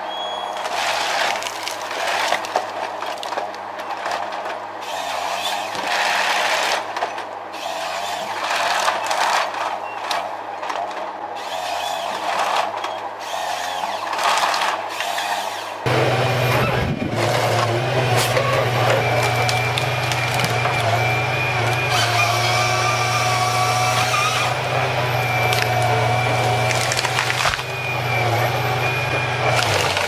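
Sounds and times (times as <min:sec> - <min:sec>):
diesel engine hum: 0:00.0 - 0:30.0
wood handling noise: 0:25.4 - 0:27.7.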